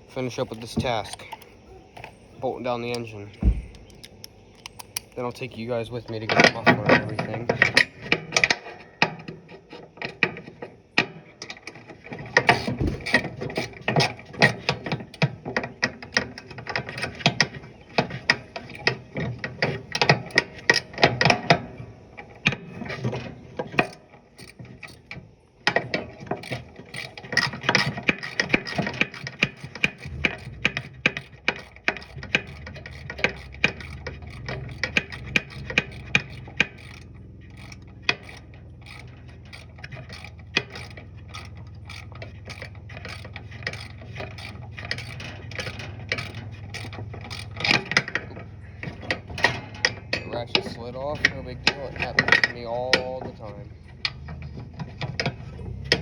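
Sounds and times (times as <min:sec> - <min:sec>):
hand ratchet clicking: 0:12.5 - 0:15.2, 0:23.8 - 0:25.1, 0:25.7 - 0:48.2.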